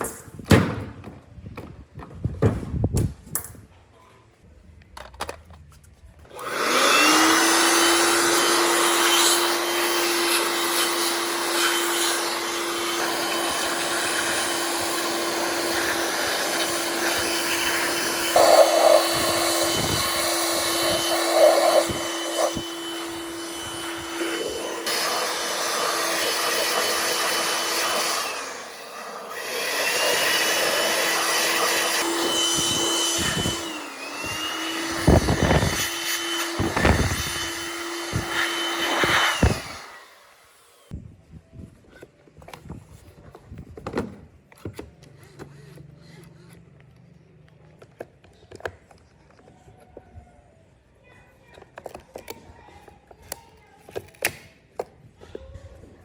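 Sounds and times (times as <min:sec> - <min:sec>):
electric fan motor whine: 0:06.3 - 0:41.0.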